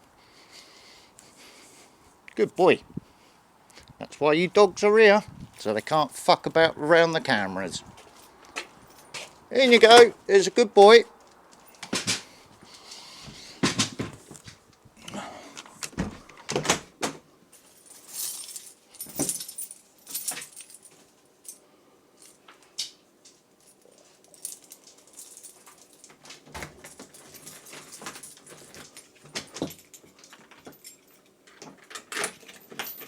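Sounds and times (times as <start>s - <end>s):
metallic jingling and rattling: 7.3s - 10.2s, 17.6s - 22.5s, 23.3s - 33.0s.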